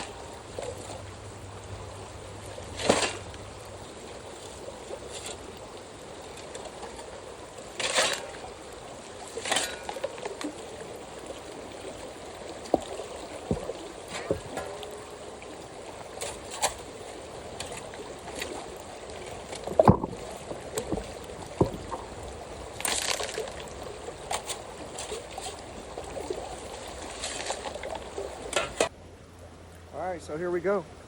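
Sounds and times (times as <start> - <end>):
creek water running over gravel: 0.0 - 31.0
rocks knocking and scraping: 12.6 - 15.2, 17.5 - 27.7.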